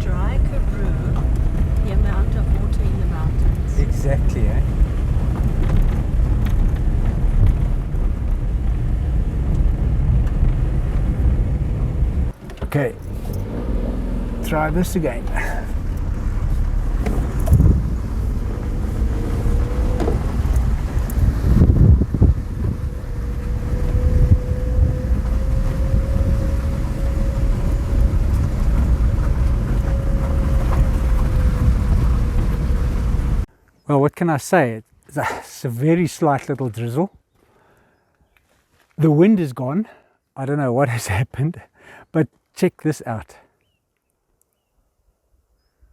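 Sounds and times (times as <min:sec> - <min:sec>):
car engine rumble: 0:00.0 - 0:33.5
tyres on gravel: 0:00.0 - 0:33.5
wind: 0:00.0 - 0:45.9.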